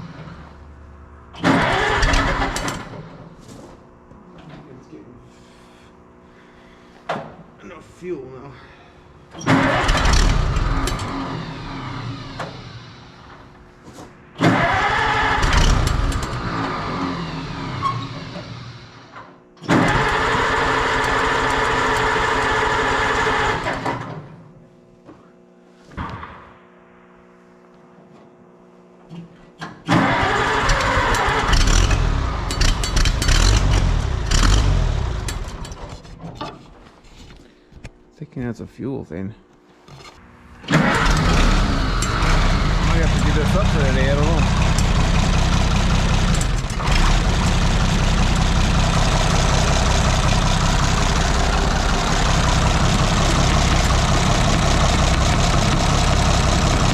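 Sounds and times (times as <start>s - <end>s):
tractor engine cranking on starter: 1.4s - 3.1s, 9.4s - 12.6s, 14.4s - 18.5s, 19.6s - 24.2s, 29.9s - 36.1s, 40.6s - 56.9s.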